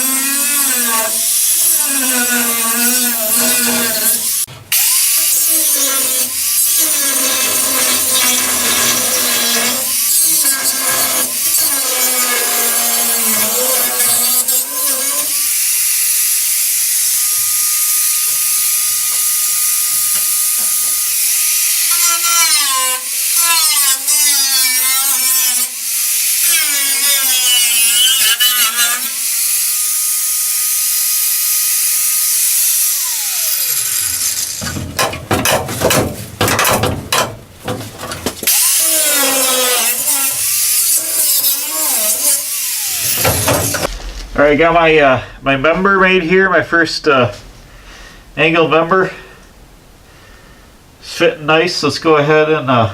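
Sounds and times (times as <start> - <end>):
electric grinder on steel: 0.0 - 37.4, 38.1 - 43.9
sharp knocks: 34.6 - 38.4.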